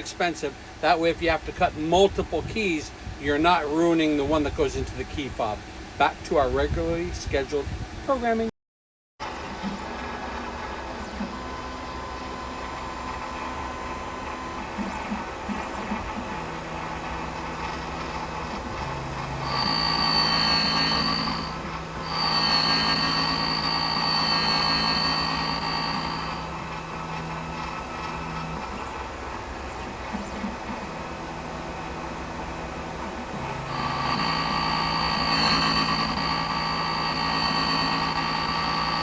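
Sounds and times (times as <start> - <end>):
cutter high-pitched whine: 9.2 - 39.0
key-cutting machine motor hum: 9.2 - 39.0.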